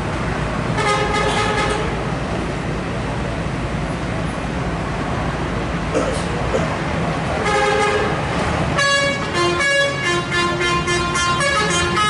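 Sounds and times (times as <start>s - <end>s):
bus engines idling: 0.0s - 12.0s
bus air horn: 0.8s - 2.0s, 7.4s - 12.0s.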